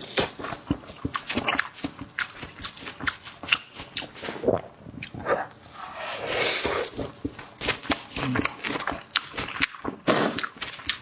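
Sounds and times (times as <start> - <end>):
wet chewing and lip smacking: 0.0 - 4.2, 6.9 - 11.0.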